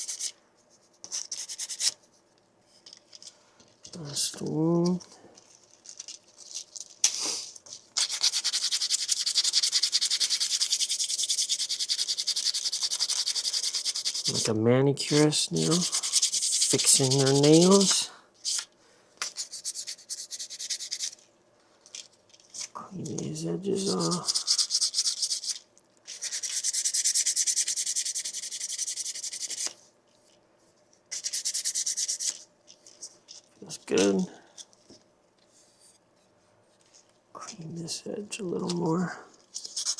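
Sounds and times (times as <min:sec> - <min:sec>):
sandpaper sanding plastic: 0:00.0 - 0:00.3, 0:01.1 - 0:02.0, 0:08.0 - 0:14.5, 0:15.1 - 0:21.2, 0:23.8 - 0:29.7, 0:31.2 - 0:32.4, 0:39.6 - 0:39.9.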